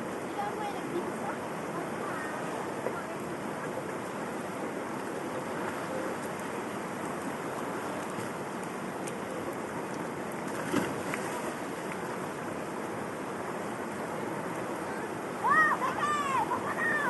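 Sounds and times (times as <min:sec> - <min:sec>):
flowing river water: 0:00.0 - 0:17.0
short knock or splash: 0:10.5 - 0:11.3.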